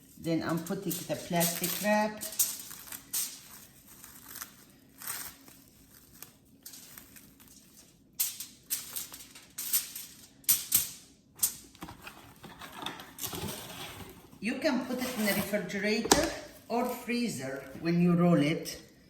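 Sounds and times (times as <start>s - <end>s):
cling wrap crinkling: 0.0s - 10.4s.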